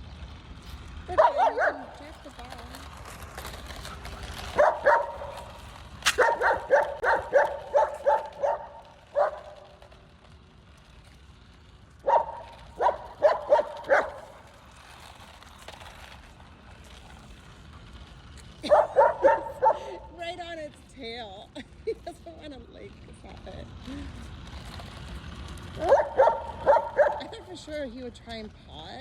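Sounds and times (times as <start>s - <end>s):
puppy yipping: 6.1s - 9.5s.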